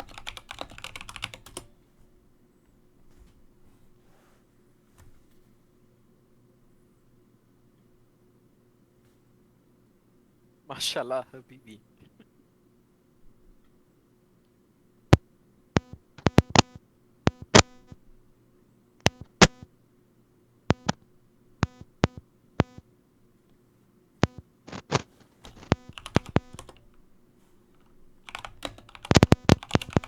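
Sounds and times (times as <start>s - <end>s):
faint steady hum: 0.0s - 30.0s
people speaking: 10.7s - 12.2s
electronic clicks and blips: 15.8s - 18.0s, 19.0s - 19.7s, 20.7s - 21.0s, 21.6s - 22.8s, 24.2s - 26.7s, 29.1s - 30.0s.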